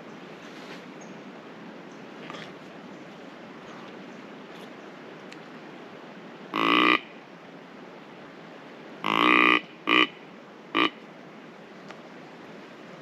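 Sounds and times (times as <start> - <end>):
buzzy deer call: 6.5 - 7.1, 9.0 - 11.0.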